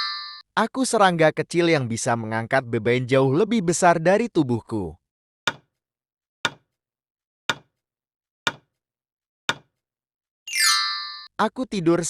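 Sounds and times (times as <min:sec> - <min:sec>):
bright ding chime: 0:00.0 - 0:00.4, 0:10.5 - 0:11.3.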